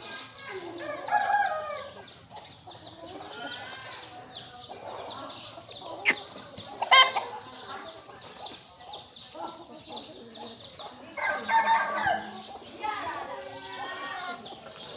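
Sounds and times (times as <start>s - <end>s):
chickens clucking and calling: 0.0s - 14.9s.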